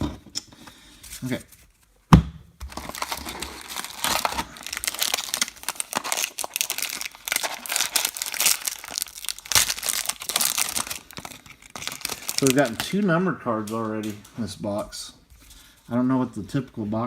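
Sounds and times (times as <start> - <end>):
card pack wrapper crinkling: 2.6 - 14.2.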